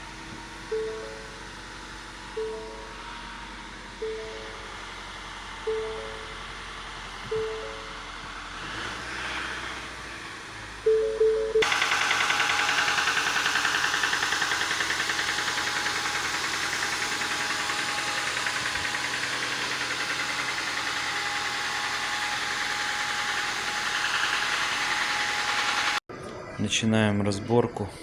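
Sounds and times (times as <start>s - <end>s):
engine running: 0.0s - 26.0s
rhythmic engine knock: 11.6s - 26.0s.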